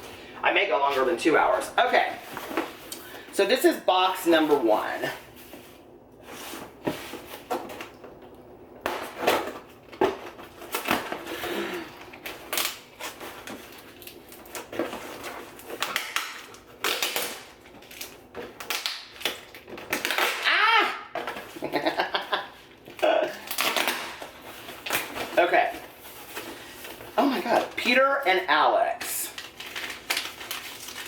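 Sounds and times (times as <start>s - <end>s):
packing material crinkling: 8.9s - 31.0s.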